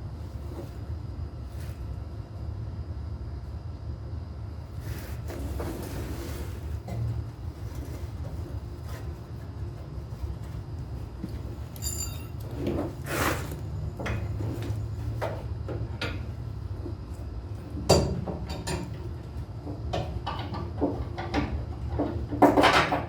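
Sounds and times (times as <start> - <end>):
steady low hum: 0.0 - 22.4
hand tools clinking on metal: 11.7 - 12.5
ringing metal clank: 11.8 - 12.4.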